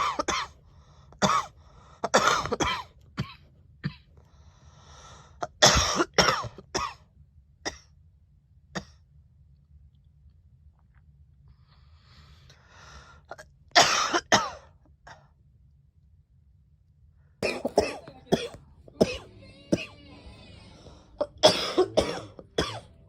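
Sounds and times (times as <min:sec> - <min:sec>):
low steady hum: 0:00.0 - 0:23.0
person coughing: 0:01.2 - 0:04.0, 0:05.4 - 0:07.0, 0:17.4 - 0:20.1, 0:20.8 - 0:23.0.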